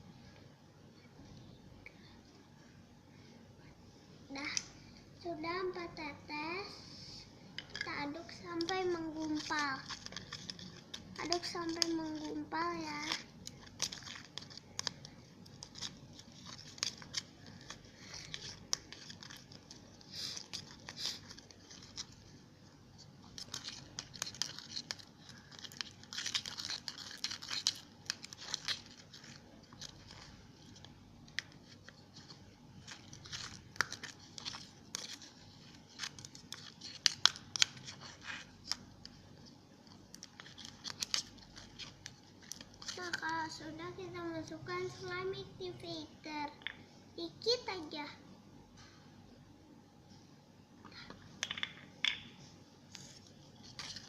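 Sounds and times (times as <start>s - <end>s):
slime being stirred: 7.5s - 45.1s, 52.9s - 54.0s.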